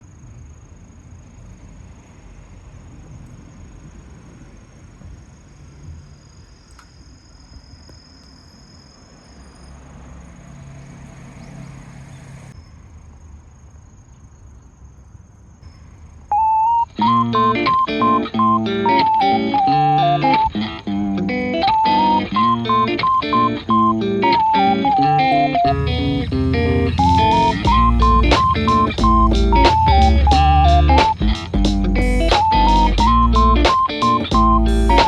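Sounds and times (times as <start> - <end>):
guitar music: 16.4 - 35.0
low rumble: 25.6 - 32.3.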